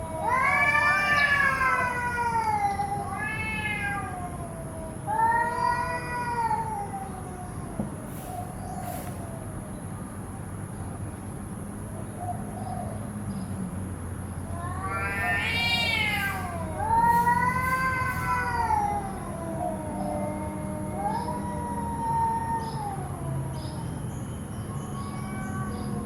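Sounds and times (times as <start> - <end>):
cat meowing: 0.0 - 7.9, 14.5 - 23.8, 24.7 - 26.0.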